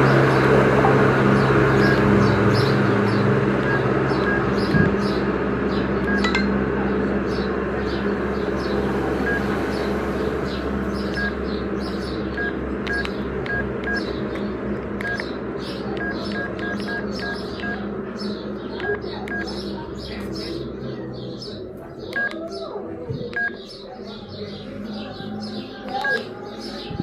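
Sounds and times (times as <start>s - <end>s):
steady background hum: 0.0s - 27.0s
phone keypad beeping: 6.0s - 6.6s, 11.1s - 11.3s, 12.4s - 14.0s, 15.0s - 15.3s, 16.0s - 17.8s, 18.8s - 19.5s, 22.1s - 22.4s, 23.3s - 23.6s.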